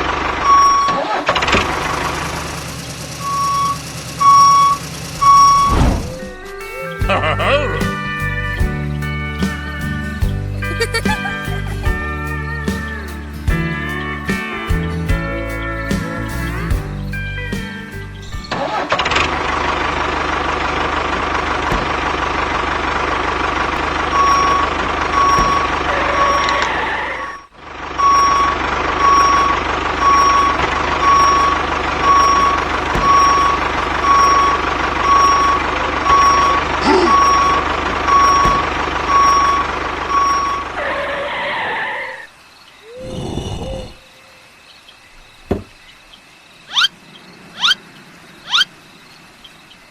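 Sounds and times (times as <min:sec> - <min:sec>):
reversing alarm beeping: 0:00.0 - 0:08.1, 0:23.7 - 0:41.5
vehicle engine running: 0:00.0 - 0:41.2.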